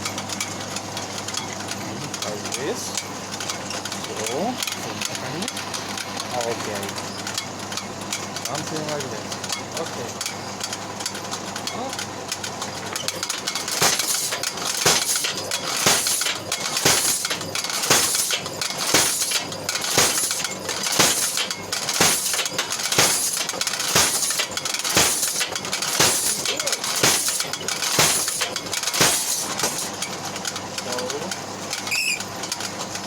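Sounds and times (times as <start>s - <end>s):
power hammer striking metal: 13.0s - 30.0s
steady hum: 13.2s - 29.9s.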